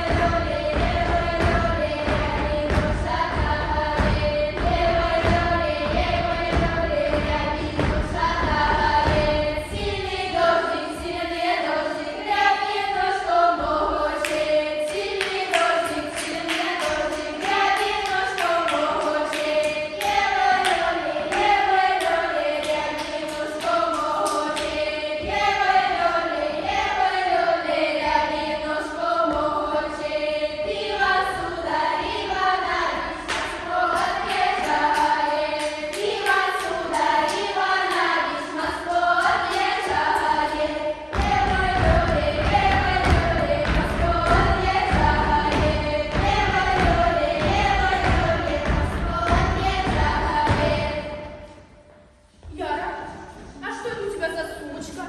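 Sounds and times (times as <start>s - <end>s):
group of voices singing folk song: 0.0s - 51.7s
low thudding: 41.1s - 51.0s.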